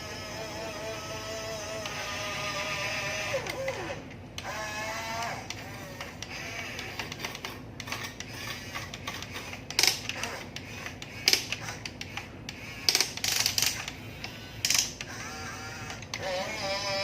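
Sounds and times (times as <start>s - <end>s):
small electric motors whirring: 0.0s - 17.0s.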